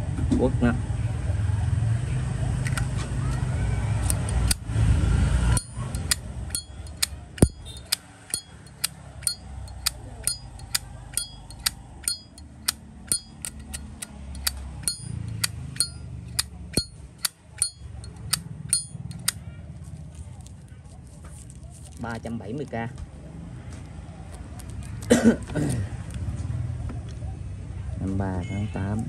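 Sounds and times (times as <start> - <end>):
lighter lid clicking open and shut: 5.6 - 19.4.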